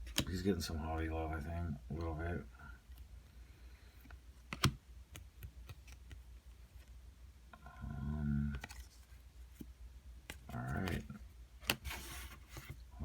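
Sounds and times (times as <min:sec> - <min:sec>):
cards being flipped: 0:00.0 - 0:00.3, 0:04.0 - 0:06.9, 0:08.5 - 0:12.8
card snapping: 0:04.5 - 0:06.2.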